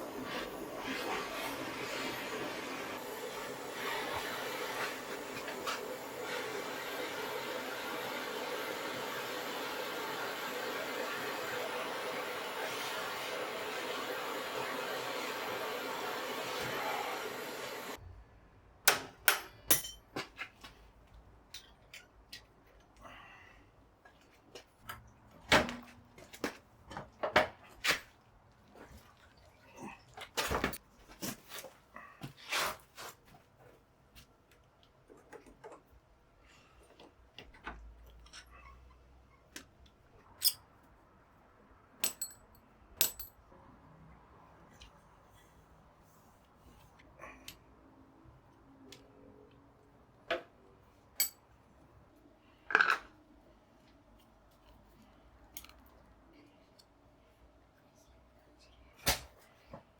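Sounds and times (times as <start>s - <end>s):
metal tools clinking and tapping: 19.3s - 20.1s, 21.5s - 22.5s, 42.0s - 43.3s, 51.2s - 51.4s.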